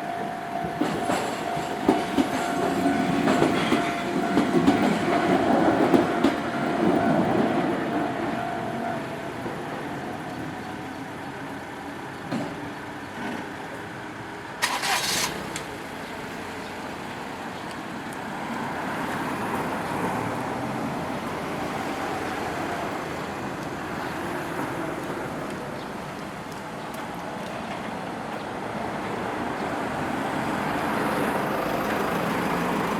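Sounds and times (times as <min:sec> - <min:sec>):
vehicles passing over crossing: 0:14.2 - 0:32.9.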